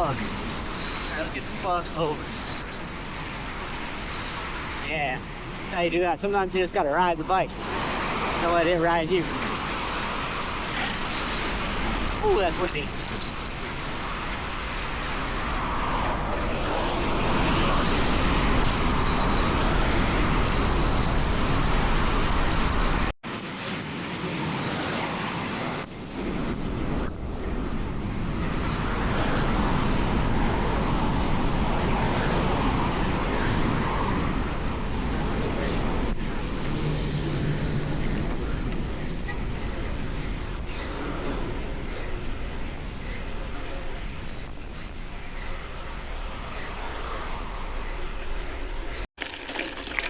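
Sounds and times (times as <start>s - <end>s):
road traffic passing: 0.0s - 49.0s
wind rumbling on microphone: 0.0s - 49.1s.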